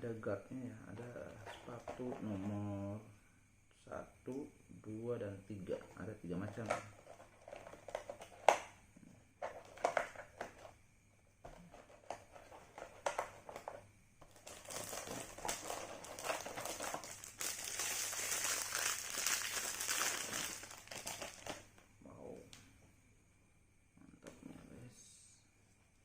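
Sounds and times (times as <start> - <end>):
plastic packaging crinkling: 11.8 - 21.8.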